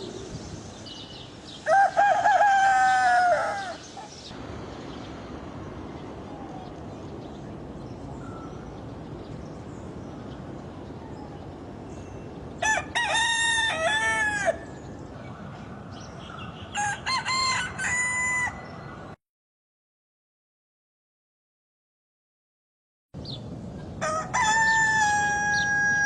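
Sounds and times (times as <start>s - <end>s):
steady background hiss: 0.0s - 12.9s
rooster crowing: 1.6s - 4.0s, 12.6s - 14.8s, 16.7s - 18.9s, 24.0s - 26.0s.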